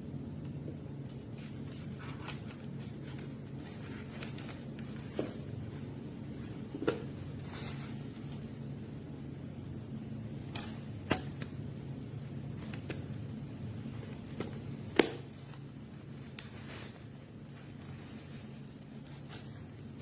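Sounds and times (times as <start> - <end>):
handling clicks and rustles: 0.5 - 8.5.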